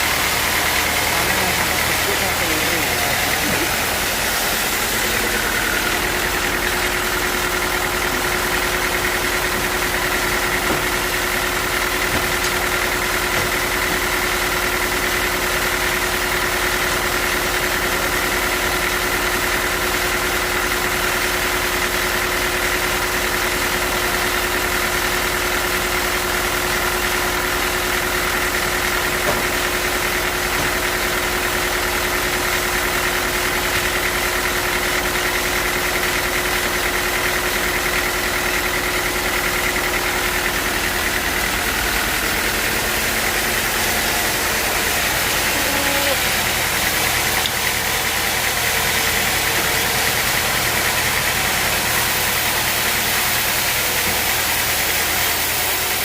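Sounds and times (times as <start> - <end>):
sawmill machinery drone: 0.0 - 56.0.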